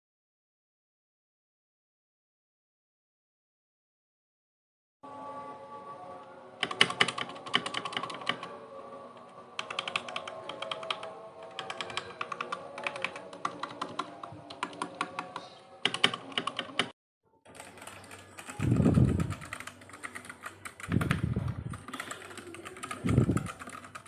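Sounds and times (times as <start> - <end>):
mechanical keyboard typing: 6.6 - 8.5, 9.6 - 24.0.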